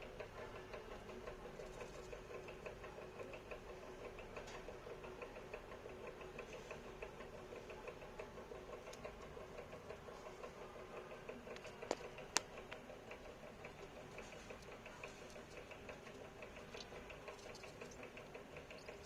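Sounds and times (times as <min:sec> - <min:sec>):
budgie chick peeping: 0:06.8 - 0:19.0.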